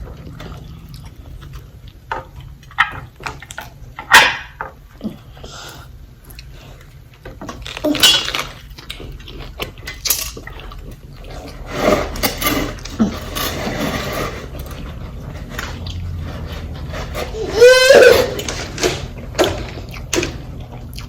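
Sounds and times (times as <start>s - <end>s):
chewing and lip-smacking: 0.1s - 3.8s, 19.7s - 21.0s.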